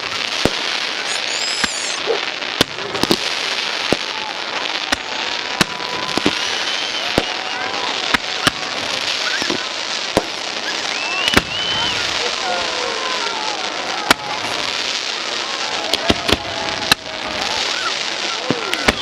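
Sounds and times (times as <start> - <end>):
fireworks crackling: 0.0 - 19.0
firework shells bursting: 0.4 - 2.0
gliding whistle tones: 1.1 - 2.0, 6.2 - 7.4, 10.6 - 12.1.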